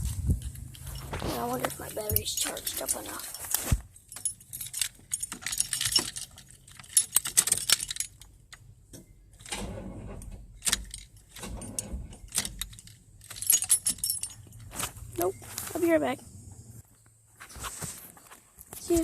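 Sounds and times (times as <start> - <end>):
keys jangling on a key ring: 0.4 - 3.5, 4.1 - 8.3, 12.3 - 14.7.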